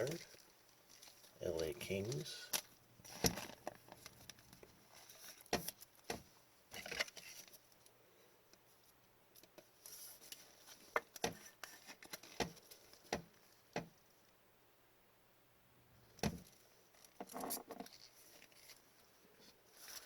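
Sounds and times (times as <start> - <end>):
cards rustling: 0.1 - 6.0, 16.4 - 19.0, 19.7 - 20.0.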